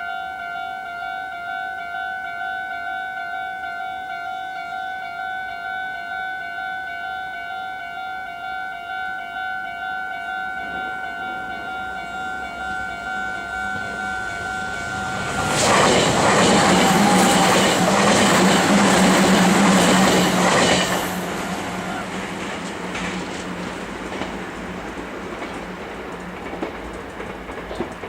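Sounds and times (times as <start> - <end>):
level-crossing warning bell: 0.0 - 22.1
train wheel and rail rumbling: 4.5 - 28.0.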